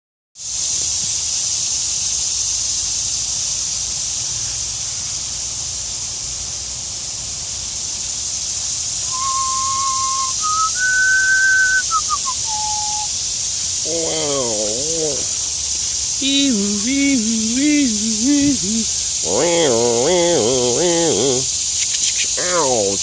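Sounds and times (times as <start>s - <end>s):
steady high hiss: 0.4s - 23.0s
person whistling: 9.1s - 13.1s.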